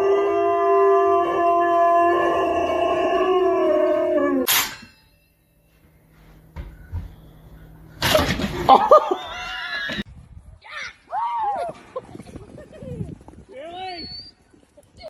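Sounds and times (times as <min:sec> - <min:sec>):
dog howling: 0:00.0 - 0:04.5.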